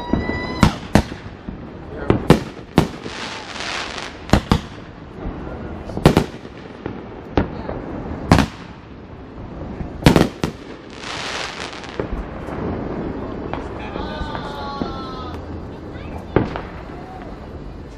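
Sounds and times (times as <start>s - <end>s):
fireworks bangs: 0.0s - 17.9s
fireworks hissing crackle: 0.0s - 17.9s.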